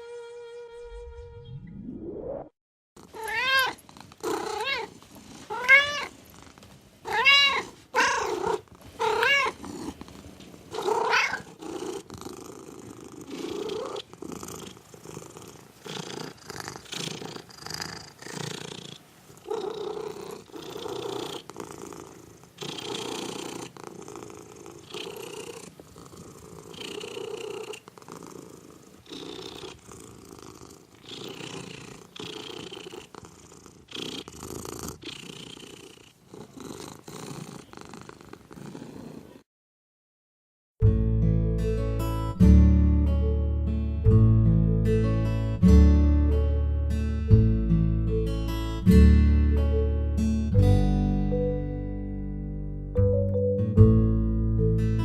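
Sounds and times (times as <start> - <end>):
cat purring: 3.0 - 7.0, 7.6 - 39.4
cat meowing: 3.1 - 4.9, 5.5 - 6.1, 7.1 - 9.6, 10.8 - 11.5.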